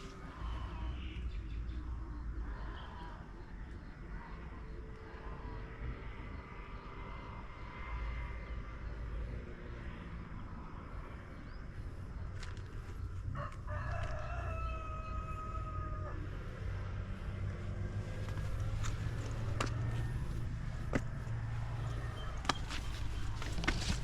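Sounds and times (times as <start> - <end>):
steady low rumble: 0.0 - 24.0
rooster crowing: 13.3 - 16.9.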